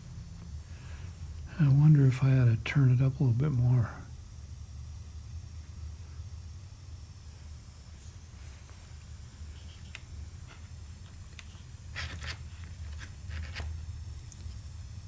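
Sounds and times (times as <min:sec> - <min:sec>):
steady low hum: 0:00.0 - 0:15.0
soldering iron scraping and ticking: 0:09.1 - 0:14.8.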